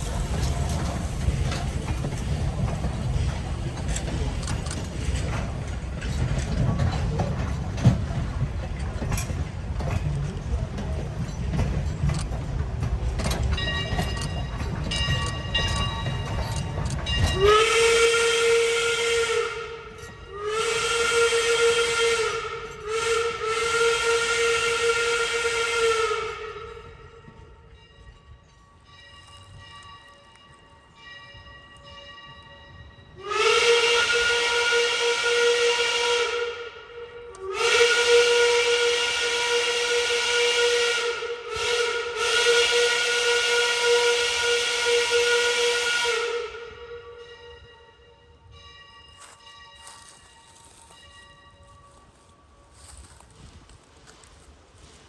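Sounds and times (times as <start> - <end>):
steam hissing: 0.0 - 6.0
steam locomotive whistle blasts: 17.2 - 27.5, 33.1 - 48.2.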